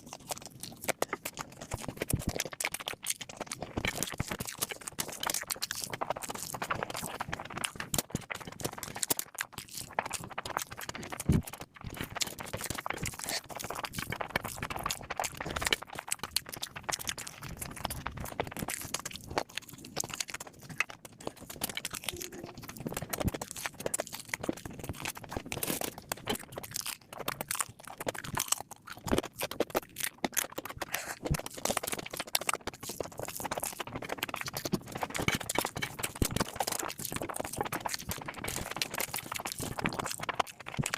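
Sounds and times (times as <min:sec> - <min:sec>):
person chewing food: 0:00.0 - 0:40.9
crunching: 0:08.6 - 0:40.9.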